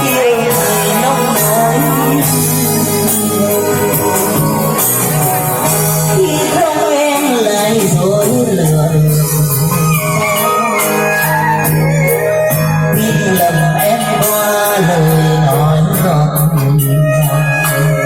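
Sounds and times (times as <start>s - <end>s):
music with steady beat: 0.0s - 18.0s.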